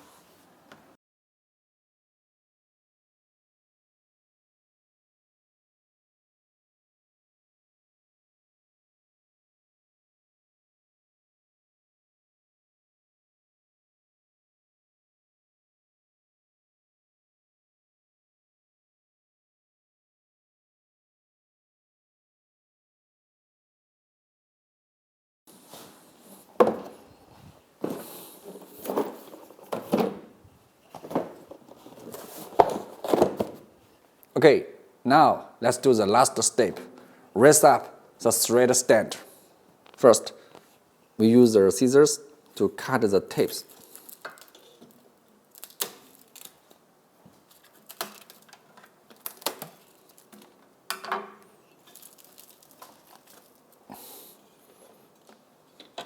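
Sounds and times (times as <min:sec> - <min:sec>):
handling and crinkling: 0:25.5 - 0:34.0, 0:43.4 - 0:50.7, 0:51.6 - 0:56.0
parts clunking and rattling: 0:26.5 - 0:27.2, 0:27.8 - 0:33.7.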